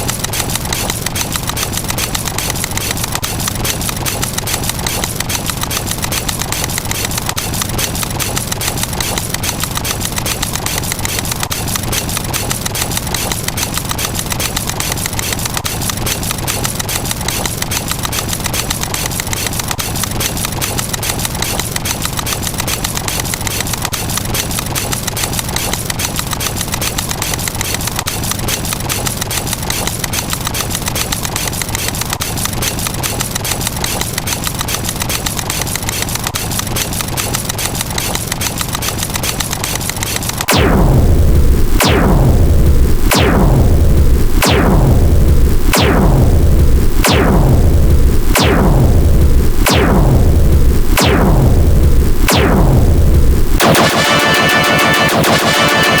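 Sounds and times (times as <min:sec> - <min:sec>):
rapid counter clicks: 0:00.0 - 0:56.0.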